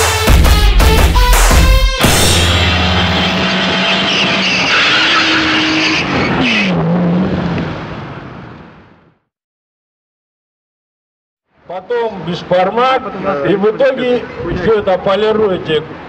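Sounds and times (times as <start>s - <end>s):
car engine: 2.0s - 8.9s
car tyres squealing: 2.5s - 7.8s.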